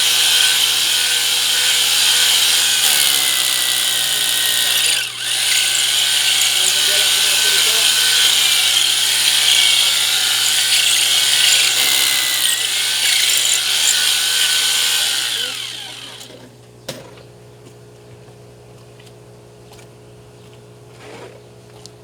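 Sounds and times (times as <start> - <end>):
core drill running: 0.0 - 16.4.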